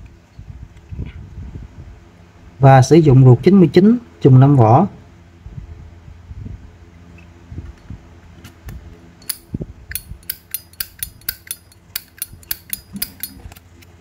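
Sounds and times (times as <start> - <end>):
lighter lid clicking: 9.2 - 13.6.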